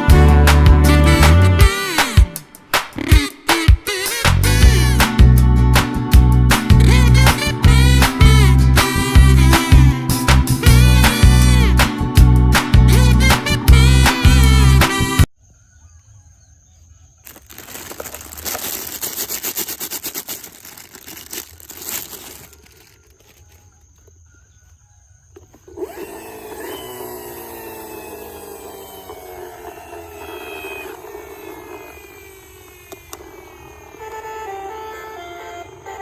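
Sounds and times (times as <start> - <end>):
plastic toys clattering: 17.2 - 23.7
whirring falling tones: 25.7 - 36.0.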